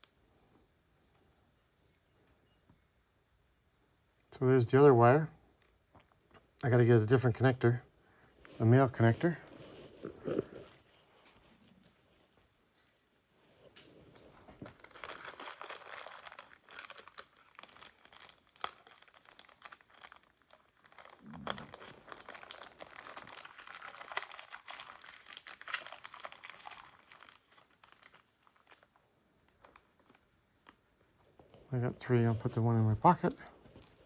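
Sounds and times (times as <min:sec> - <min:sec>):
packet crinkling and rustling: 0:08.3 - 0:12.3, 0:13.5 - 0:34.0.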